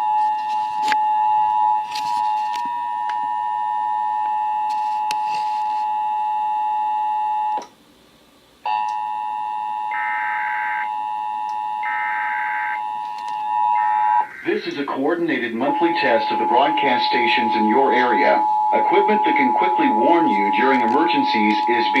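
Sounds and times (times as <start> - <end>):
two-tone alarm signal: 0.0 - 7.6, 8.7 - 22.0
high-pitched digital data tones: 9.9 - 11.0, 11.8 - 22.0.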